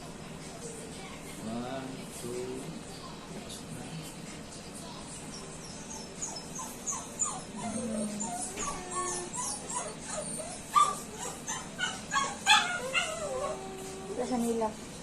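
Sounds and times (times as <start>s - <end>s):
dog whimpering: 5.3s - 14.6s
dog yelps: 5.6s - 13.6s.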